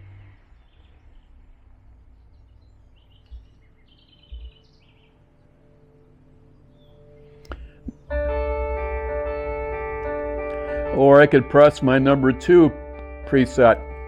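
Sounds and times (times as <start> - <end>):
faint bird chirps: 0.0 - 8.1
steady low hum: 0.0 - 14.0
soft low thumps: 2.0 - 5.0.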